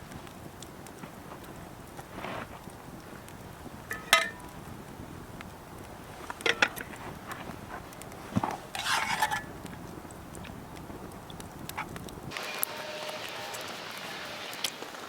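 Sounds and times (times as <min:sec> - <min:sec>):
metal utensils clinking on skillet: 0:03.9 - 0:04.5, 0:06.4 - 0:07.0, 0:08.7 - 0:09.5.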